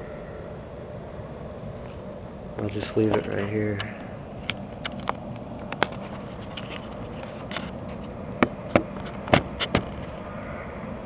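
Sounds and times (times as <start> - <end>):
background hiss: 0.0 - 11.0.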